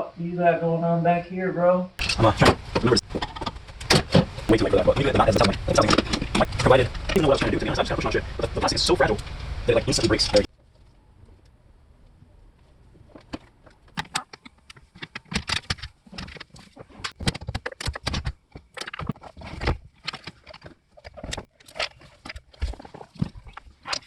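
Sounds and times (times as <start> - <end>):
plastic trim clicking and rattling: 13.2 - 22.4.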